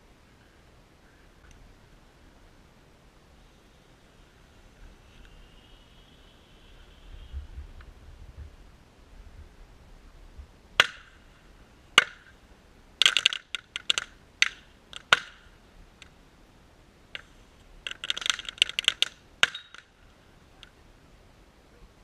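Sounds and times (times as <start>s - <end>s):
sharp cracks and clinks: 13.0s - 16.1s, 17.2s - 20.0s.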